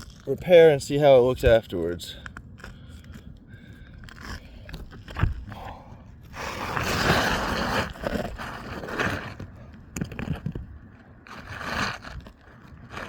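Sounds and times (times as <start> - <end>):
shingles scraping: 6.4 - 13.0.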